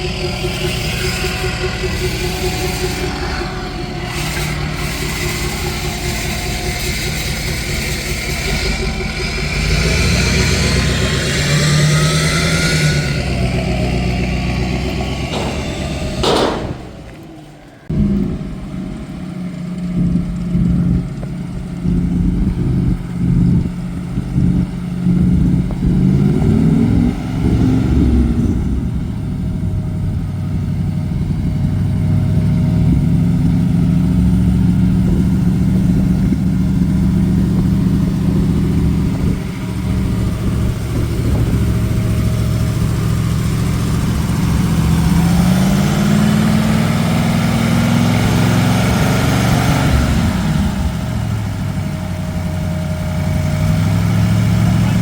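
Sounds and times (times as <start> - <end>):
car engine idling and revving: 0.0 - 55.0.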